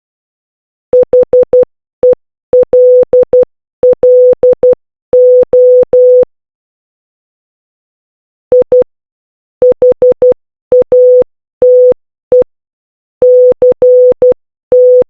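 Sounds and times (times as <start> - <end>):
morse code beeps: 1.0 - 6.3, 9.6 - 12.5, 13.2 - 15.0.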